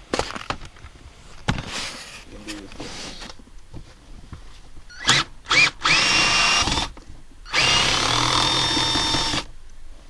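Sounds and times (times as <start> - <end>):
power drill motor whirring: 4.9 - 9.5.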